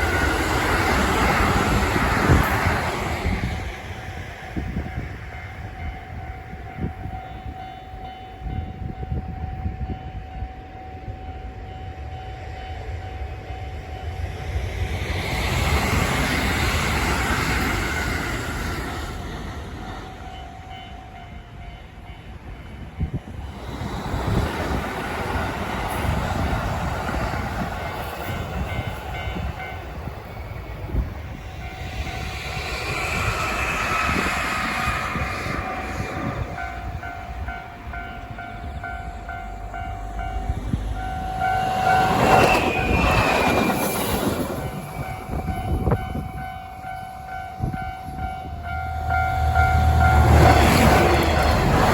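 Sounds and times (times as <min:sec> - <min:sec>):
trains rushing and clattering: 0:00.0 - 0:51.9
level-crossing alarm ringing: 0:31.5 - 0:51.8
train horn: 0:40.8 - 0:43.5, 0:44.7 - 0:51.5.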